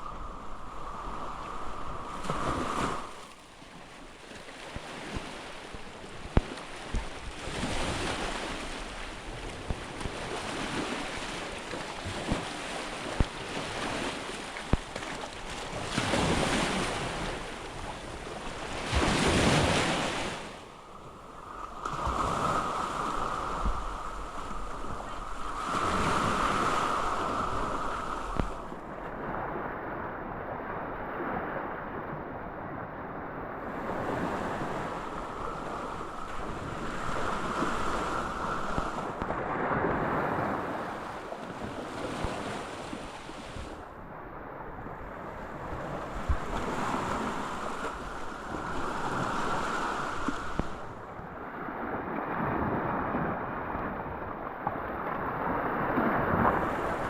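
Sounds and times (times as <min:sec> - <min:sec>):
waves washing onto beach: 0:00.0 - 0:57.0
wind on microphone: 0:00.0 - 0:57.0.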